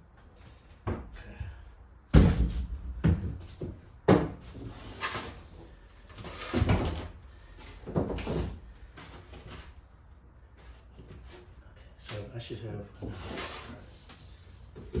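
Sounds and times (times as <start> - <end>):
wooden board knocks and thuds: 2.1 - 4.6.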